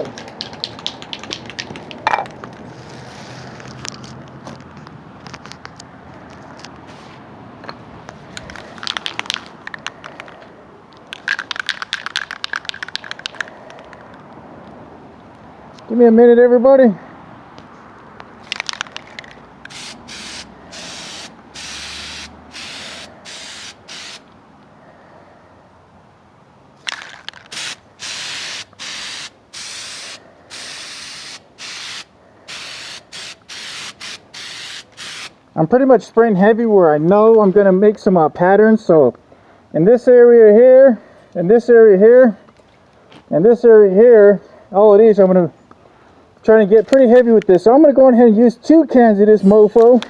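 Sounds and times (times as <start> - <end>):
sharp clicks: 0.0 - 2.0, 11.0 - 14.2
spray paint can rattling: 0.0 - 2.4, 8.3 - 10.3, 11.1 - 13.6, 18.4 - 24.3, 26.8 - 35.3.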